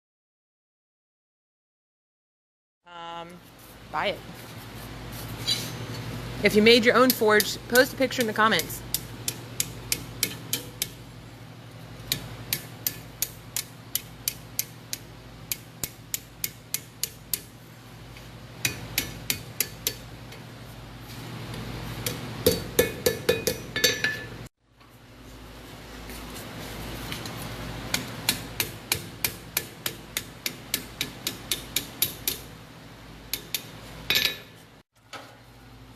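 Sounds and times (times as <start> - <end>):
steady low hum: 3.0 - 35.9
hammer striking iron on anvil: 7.0 - 11.0, 12.1 - 17.5, 18.6 - 20.1, 22.0 - 24.4, 27.9 - 32.5, 33.3 - 34.5.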